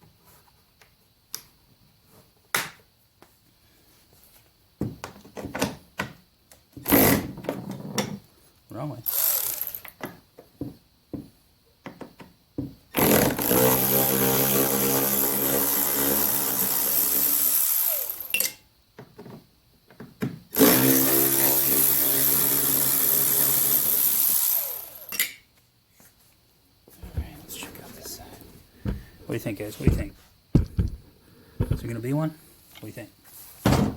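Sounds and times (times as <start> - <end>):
cordless drill running: 9.1 - 9.9, 13.0 - 18.3, 20.6 - 25.1.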